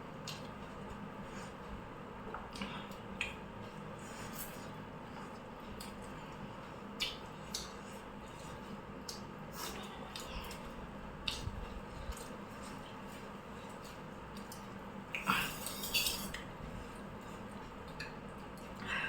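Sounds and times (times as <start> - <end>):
utensils clinking on plates: 15.6 - 16.4.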